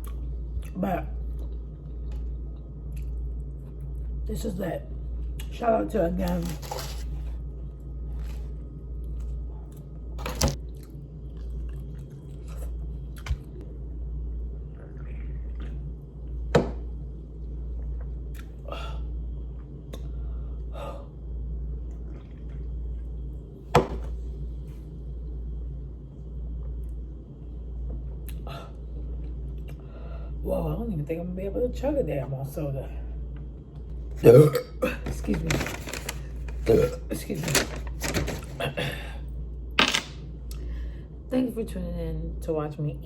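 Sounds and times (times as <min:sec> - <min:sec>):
chewing and swallowing: 0:00.0 - 0:04.2, 0:08.1 - 0:13.7, 0:14.3 - 0:16.4, 0:17.7 - 0:18.6, 0:21.8 - 0:23.3
low hum: 0:00.0 - 0:43.0.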